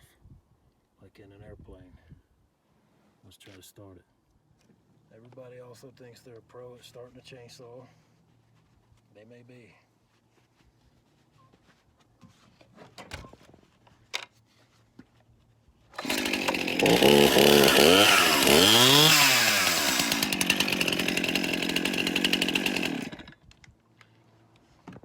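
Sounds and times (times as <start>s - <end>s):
chainsaw running and revving: 16.0s - 23.4s.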